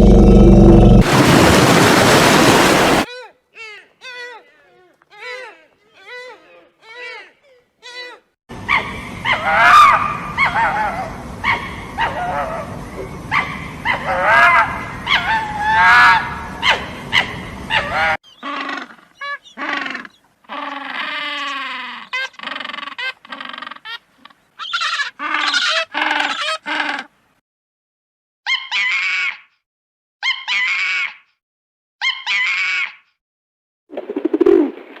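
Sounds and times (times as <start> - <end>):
animal calls and cries: 3.1 - 27.2, 28.5 - 29.5, 30.2 - 31.3, 32.0 - 33.1.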